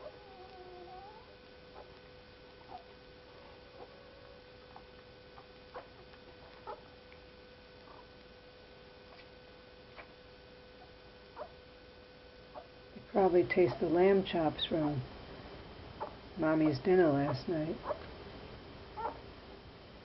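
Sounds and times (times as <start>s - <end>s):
steady electrical hum: 0.0s - 20.0s
newborn animals squeaking: 2.6s - 2.9s, 4.7s - 6.9s, 7.9s - 8.1s, 10.8s - 11.6s, 17.8s - 18.1s, 19.0s - 19.2s.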